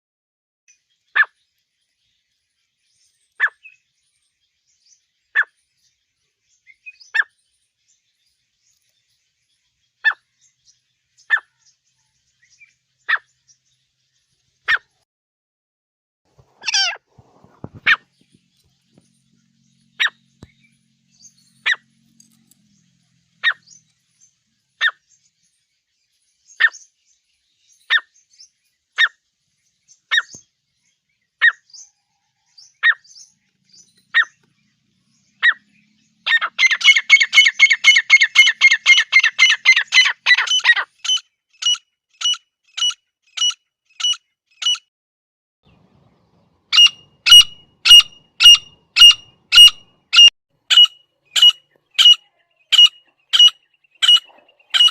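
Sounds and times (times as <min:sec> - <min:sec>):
partridge calls: 0:11.2 - 0:11.6, 0:16.4 - 0:18.2, 0:23.4 - 0:23.8, 0:32.8 - 0:34.5, 0:35.4 - 0:44.8, 0:46.7 - 0:54.9
fast chattering bird notes: 0:36.3 - 0:44.8, 0:46.8 - 0:54.9.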